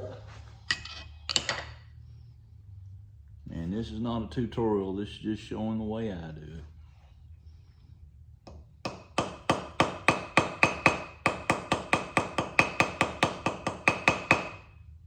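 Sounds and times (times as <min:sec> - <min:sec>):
small hammer tapping metal: 0:08.5 - 0:14.6.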